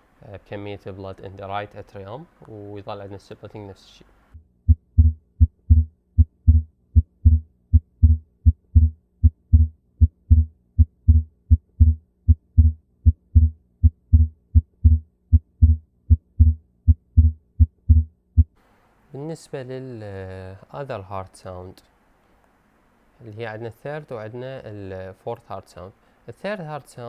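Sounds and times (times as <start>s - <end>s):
faint steady hum: 0.0s - 27.0s
heartbeat through stethoscope: 4.7s - 18.6s.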